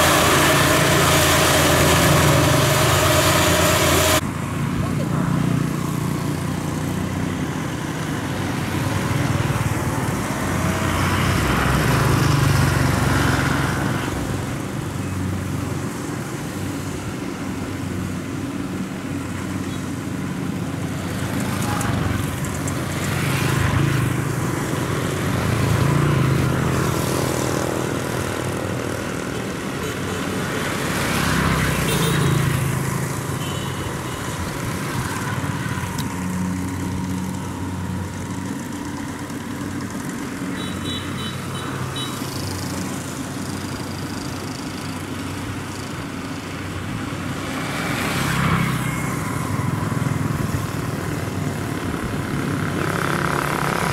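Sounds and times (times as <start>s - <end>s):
diesel engine droning: 0.0s - 4.4s.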